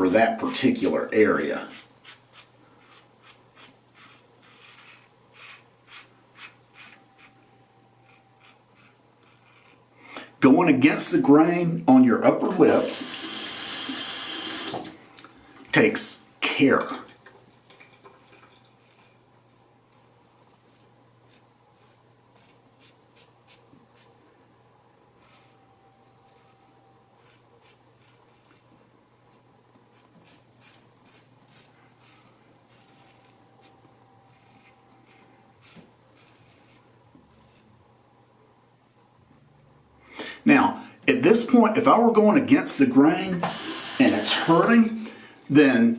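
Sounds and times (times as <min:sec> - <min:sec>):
razor scraping stubble: 0:00.6 - 0:07.4, 0:08.0 - 0:09.9, 0:18.1 - 0:24.2, 0:25.2 - 0:37.7.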